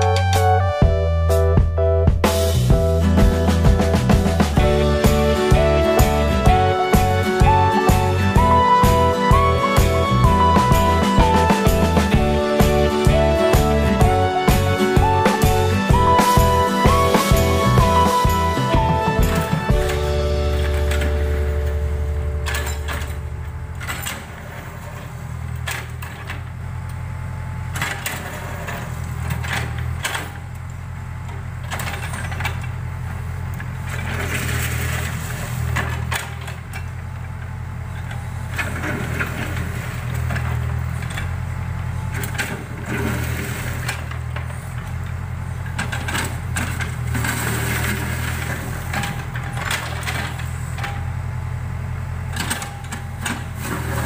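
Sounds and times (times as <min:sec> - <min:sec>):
diesel engine running: 0:00.0 - 0:54.0
machine clanking on soil: 0:11.0 - 0:26.6, 0:27.7 - 0:54.0.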